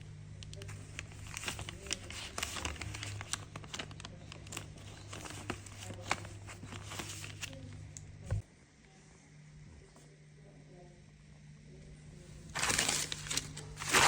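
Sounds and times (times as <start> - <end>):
banknotes rustling: 0.6 - 7.8, 12.4 - 14.0.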